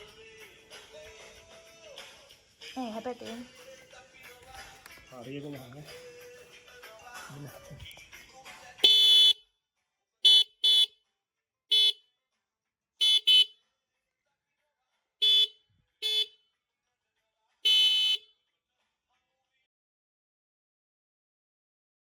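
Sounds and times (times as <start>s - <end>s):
motorcycle horn beeps: 8.8s - 9.4s, 10.3s - 11.0s, 11.7s - 12.0s, 13.0s - 13.6s, 15.2s - 16.4s, 17.7s - 18.3s.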